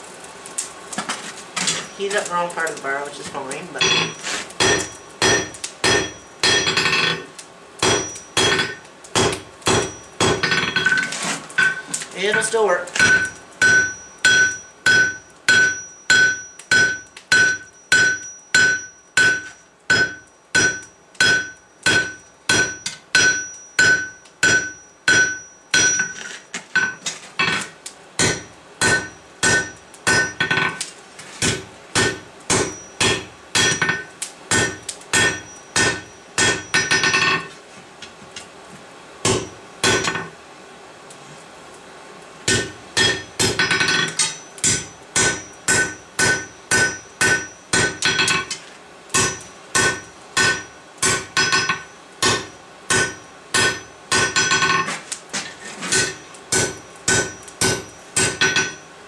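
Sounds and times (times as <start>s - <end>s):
high metallic ring: 3.8s - 8.8s, 9.7s - 27.6s, 28.3s - 30.8s, 32.1s - 37.5s, 43.0s - 48.6s
hammer striking steel on anvil: 3.8s - 30.8s, 31.4s - 37.5s, 39.2s - 40.3s, 42.5s - 48.6s, 49.2s - 54.9s, 55.9s - 58.9s.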